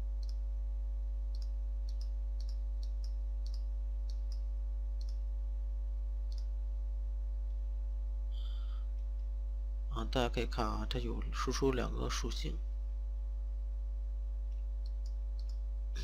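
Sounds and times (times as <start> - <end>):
electrical mains hum: 0.0 - 16.0
computer mouse clicking: 1.3 - 4.4, 5.0 - 5.2, 14.8 - 15.6.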